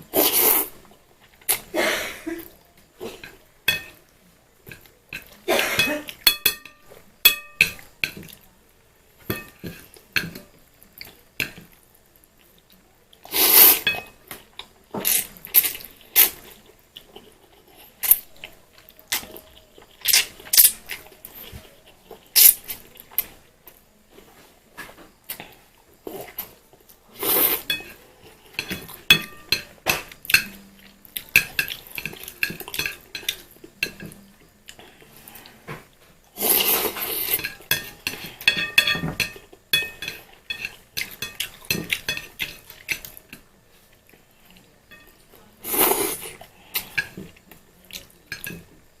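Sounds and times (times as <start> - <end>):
utensils clinking on a dish: 3.2 - 4.0, 4.6 - 8.4, 9.2 - 10.6, 13.5 - 14.4, 27.6 - 34.3, 36.5 - 43.5, 44.8 - 45.5, 46.8 - 47.3, 48.0 - 48.8.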